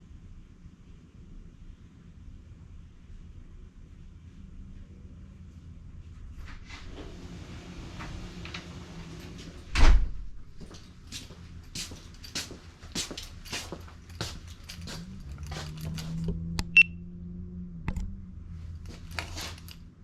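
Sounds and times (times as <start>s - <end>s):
small tools clicking and rustling: 12.1s - 16.4s, 18.8s - 19.9s
low hum: 13.2s - 20.0s.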